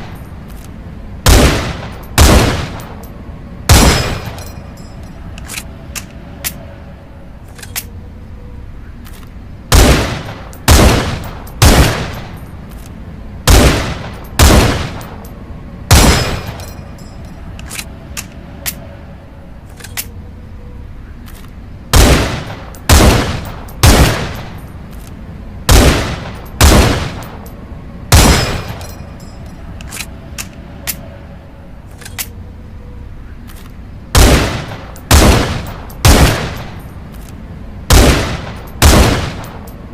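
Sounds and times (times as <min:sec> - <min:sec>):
rifle shots with echo: 0:01.2 - 0:03.0, 0:03.7 - 0:04.4, 0:09.7 - 0:12.3, 0:13.5 - 0:15.2, 0:15.9 - 0:16.6, 0:21.9 - 0:24.6, 0:25.7 - 0:27.4, 0:28.1 - 0:28.8, 0:34.1 - 0:36.8, 0:37.9 - 0:39.7.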